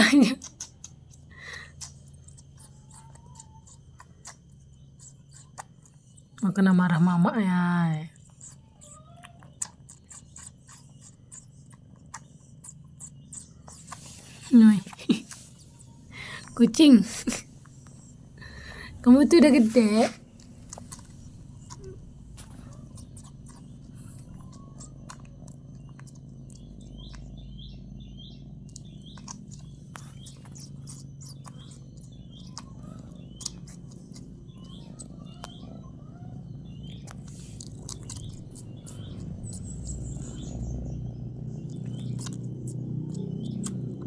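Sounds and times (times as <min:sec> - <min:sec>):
small birds chirping: 0:00.0 - 0:44.0.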